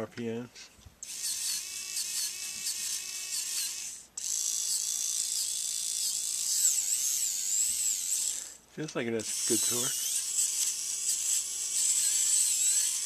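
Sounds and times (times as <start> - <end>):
cordless screwdriver whining: 9.2 - 13.0.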